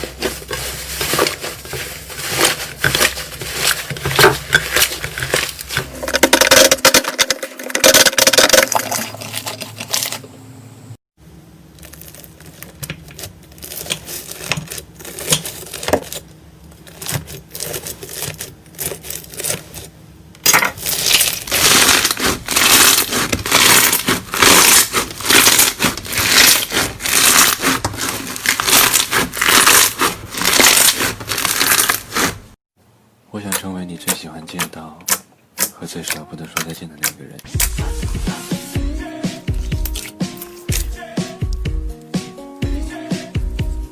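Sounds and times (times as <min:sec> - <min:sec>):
slime crackling and popping: 0:20.8 - 0:32.5, 0:39.6 - 0:40.9.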